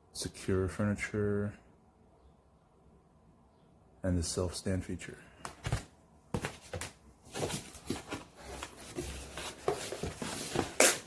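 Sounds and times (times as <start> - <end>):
packaging rustling and crinkling: 5.6 - 11.0.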